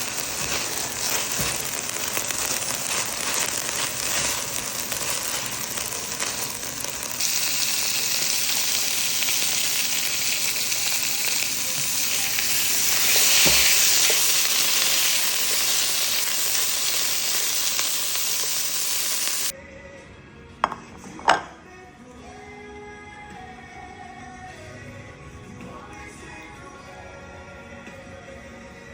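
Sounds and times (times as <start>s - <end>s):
food sizzling in a pan: 0.0s - 19.5s.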